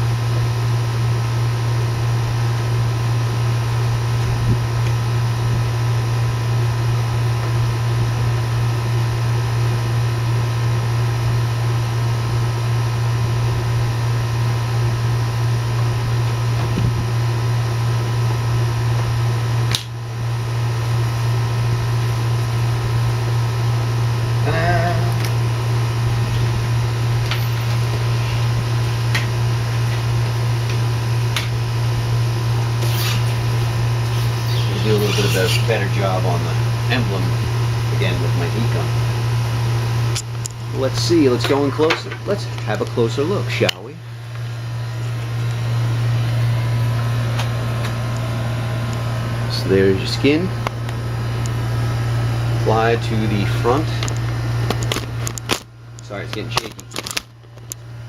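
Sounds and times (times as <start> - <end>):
low machine hum: 0.0 - 58.0
wavering squeak: 32.8 - 36.0.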